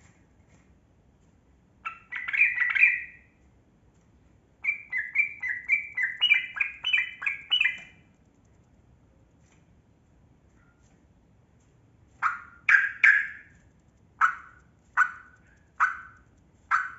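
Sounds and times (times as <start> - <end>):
bulbul singing: 1.9 - 3.3, 4.6 - 8.1, 12.6 - 13.5.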